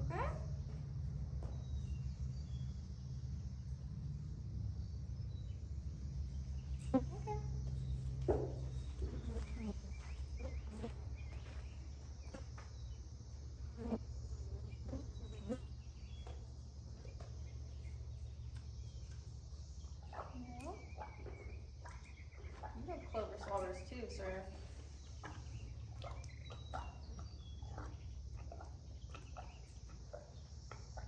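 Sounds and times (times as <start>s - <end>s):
flying insects buzzing: 4.8s - 21.0s.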